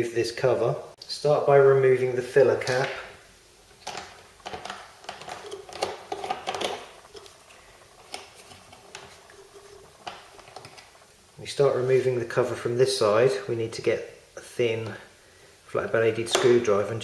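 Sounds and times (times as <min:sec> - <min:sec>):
plastic clicks and rattles: 0:03.8 - 0:07.4.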